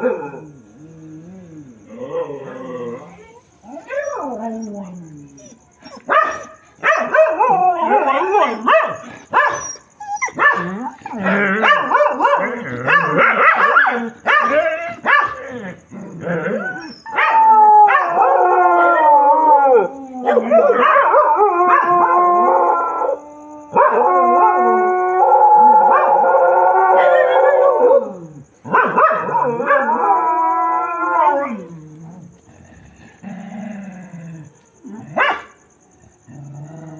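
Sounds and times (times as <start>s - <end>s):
dogs howling: 0.0s - 32.5s
dogs barking and yelping: 3.7s - 32.5s, 35.0s - 35.6s.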